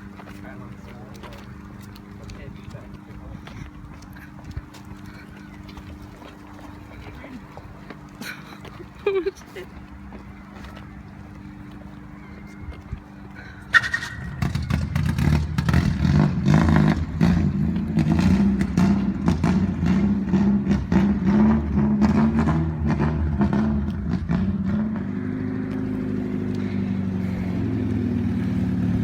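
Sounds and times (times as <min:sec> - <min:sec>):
engine popping: 0:13.7 - 0:29.0.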